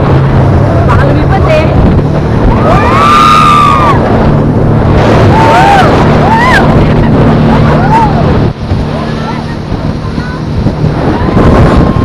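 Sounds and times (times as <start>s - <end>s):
motorboat engine running: 0.0s - 12.0s
water noise: 0.0s - 12.0s
wind: 0.0s - 12.0s
high rising and falling cries: 2.5s - 4.3s.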